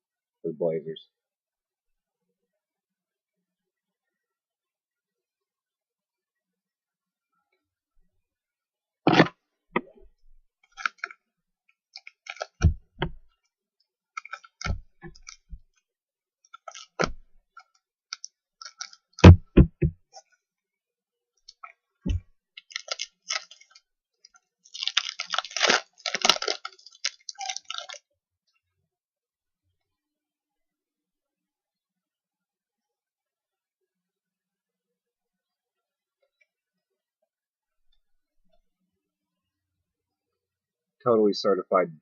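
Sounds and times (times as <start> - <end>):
wrapper crinkling: 12.0 - 12.6, 14.2 - 15.5, 18.1 - 19.2, 22.6 - 23.8, 24.7 - 28.0.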